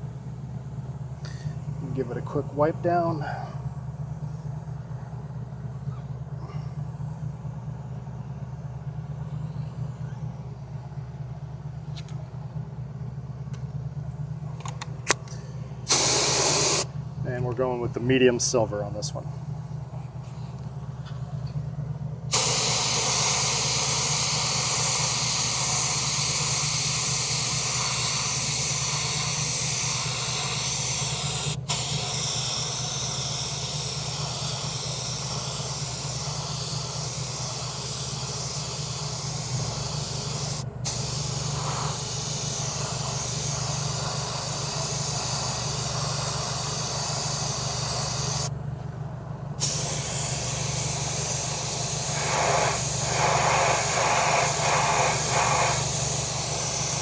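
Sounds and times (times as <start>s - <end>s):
low steady hum: 0.0s - 57.0s
spray paint hissing: 15.9s - 16.9s, 22.3s - 48.5s, 49.6s - 57.0s.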